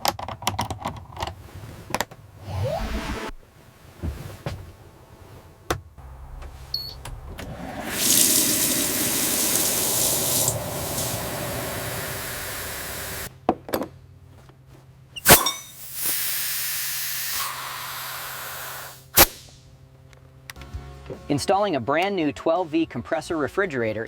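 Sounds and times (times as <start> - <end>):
steady low hum: 4.6 - 13.3
loud rushing hiss: 7.5 - 13.3.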